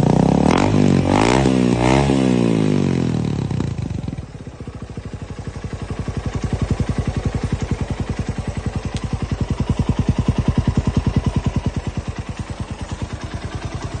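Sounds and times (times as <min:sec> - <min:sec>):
motorcycle engine idling: 0:00.0 - 0:14.0.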